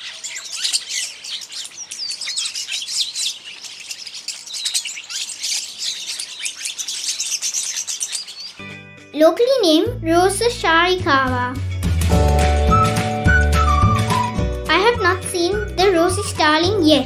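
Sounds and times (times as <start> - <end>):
starlings chattering: 0.0 - 8.8, 13.6 - 17.0.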